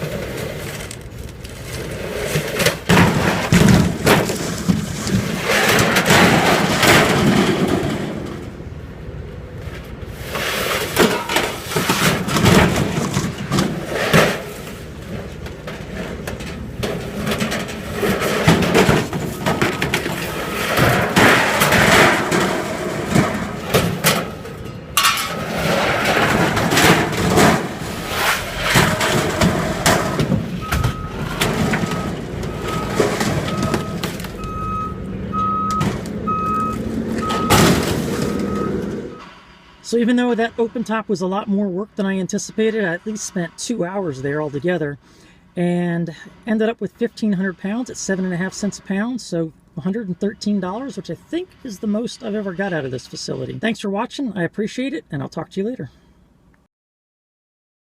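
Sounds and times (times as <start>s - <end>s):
scrap metal crashing: 0.0s - 9.0s, 9.6s - 39.5s.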